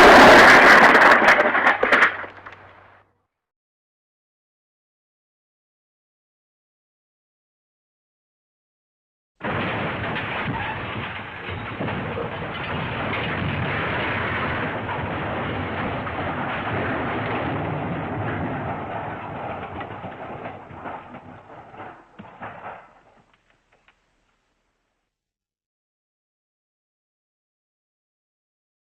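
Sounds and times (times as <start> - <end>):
crashing debris clatter: 0.0 - 2.9, 9.4 - 24.0.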